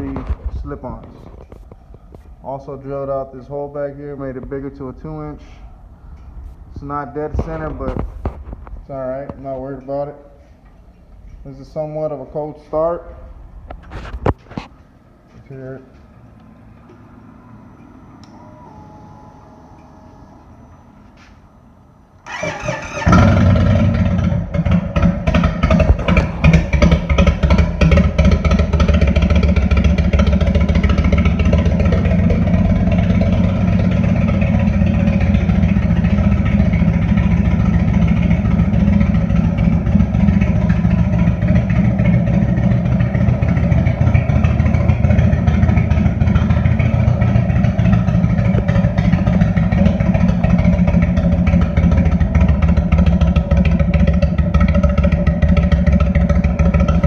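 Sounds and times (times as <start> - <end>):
motorcycle engine idling: 22.2 - 57.0.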